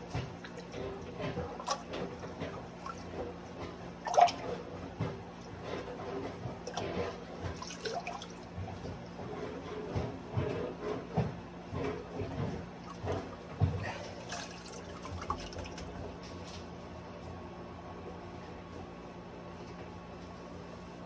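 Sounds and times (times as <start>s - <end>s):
water splashing and gurgling: 0.0s - 6.0s, 6.6s - 9.4s, 12.9s - 16.1s
steady low hum: 0.0s - 18.7s.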